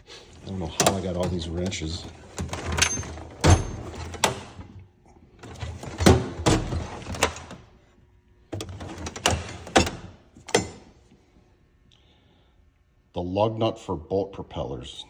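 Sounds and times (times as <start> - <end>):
wrenches clinking in toolbox drawer: 0.4 - 4.6, 8.6 - 10.9.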